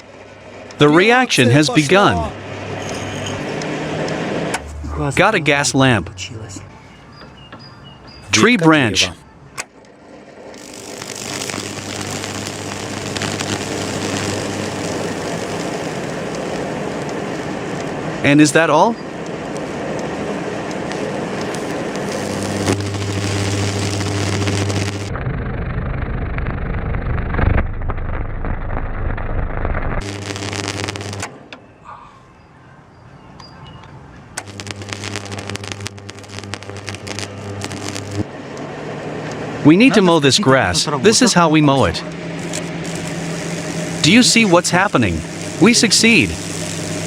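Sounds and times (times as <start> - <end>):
electrical arc buzzing and crackling: 10.3 - 31.3, 34.4 - 47.0.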